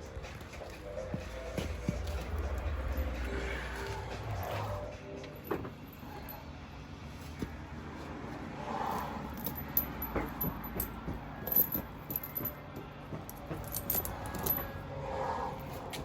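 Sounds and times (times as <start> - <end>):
metal tire chains clinking: 1.7 - 6.6, 8.9 - 14.9.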